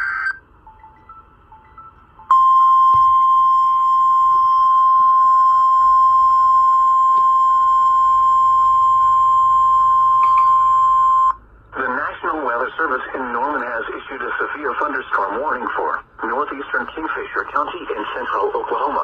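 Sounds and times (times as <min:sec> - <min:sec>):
steady high alarm tone: 0:00.0 - 0:11.4.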